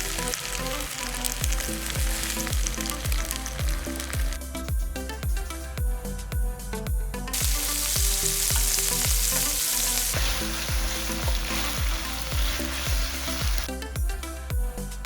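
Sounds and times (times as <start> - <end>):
food sizzling in frying pan: 0.0 - 4.4, 7.4 - 13.7
background music with kick drum: 0.0 - 15.0.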